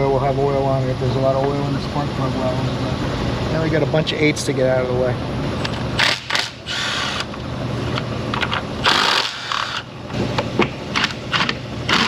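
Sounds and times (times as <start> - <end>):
ratchet clicking: 8.8 - 9.9.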